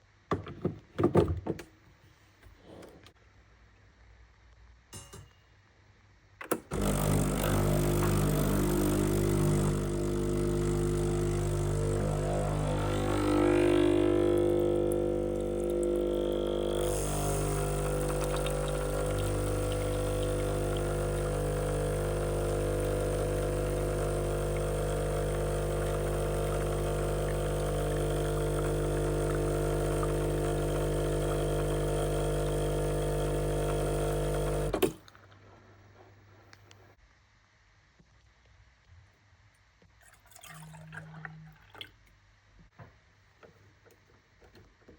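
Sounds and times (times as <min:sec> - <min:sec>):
espresso machine pump humming: 0:06.7 - 0:34.9.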